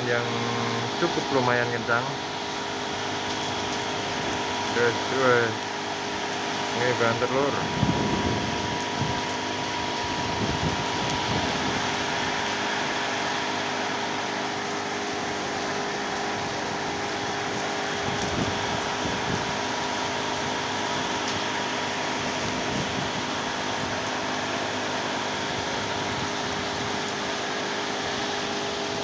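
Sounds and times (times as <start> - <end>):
heavy rain pouring: 0.0 - 29.0
wind rumbling on microphone: 7.6 - 12.4, 16.4 - 20.6, 22.2 - 24.1.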